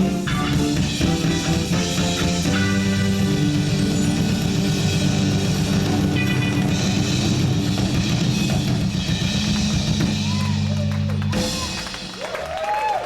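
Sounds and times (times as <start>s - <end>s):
reggae band playing: 0.0s - 12.2s
audience cheering and whistling: 10.0s - 13.0s.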